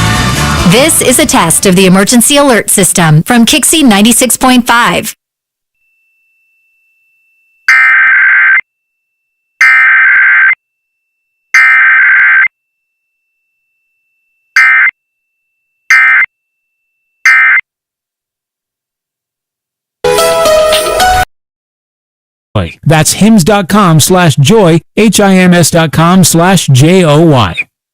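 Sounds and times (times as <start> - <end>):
buzzy digital data bursts: 9.6 - 10.6.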